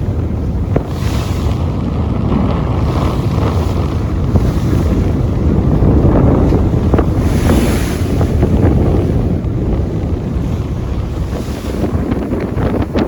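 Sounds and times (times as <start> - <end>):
waves rushing around boat: 0.0 - 13.0
wind buffeting microphone: 0.0 - 13.0.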